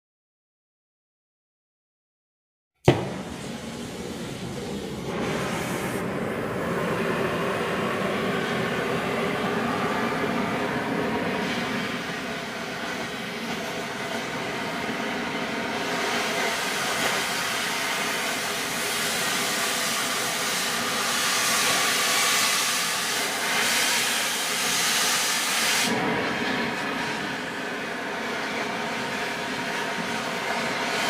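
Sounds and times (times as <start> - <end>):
cutting torch hissing: 2.9 - 31.0.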